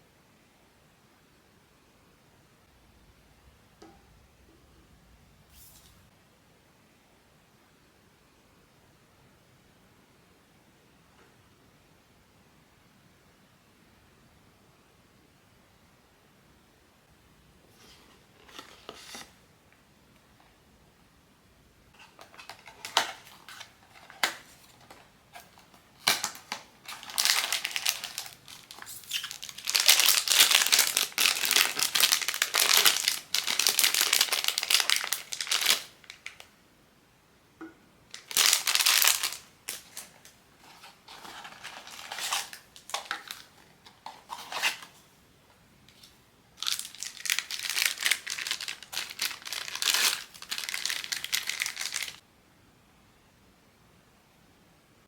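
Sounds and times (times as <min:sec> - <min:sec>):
plastic packaging crinkling and tearing: 0:22.0 - 0:36.5, 0:38.1 - 0:44.9, 0:46.0 - 0:52.2.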